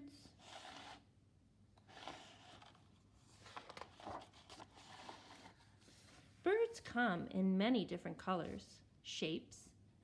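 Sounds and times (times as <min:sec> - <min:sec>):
paper book rustling: 0:01.9 - 0:06.3.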